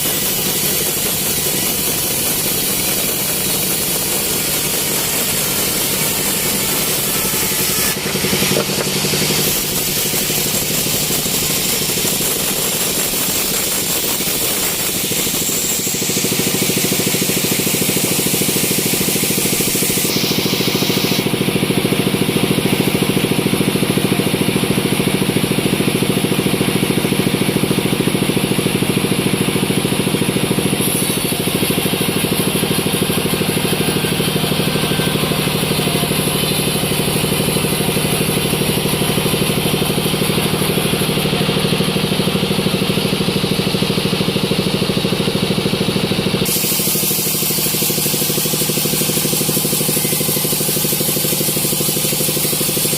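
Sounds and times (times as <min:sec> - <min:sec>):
engine-like hum: 0:00.0 - 0:52.9
sawmill machinery running: 0:00.0 - 0:52.9.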